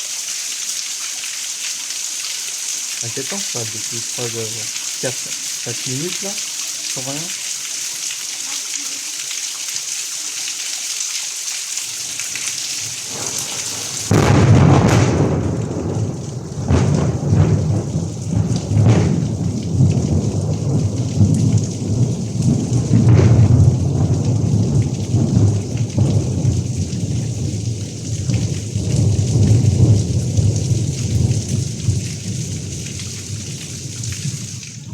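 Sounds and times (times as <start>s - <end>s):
rain hissing: 0.0s - 34.9s
thunder rumbling and cracking: 13.0s - 34.9s.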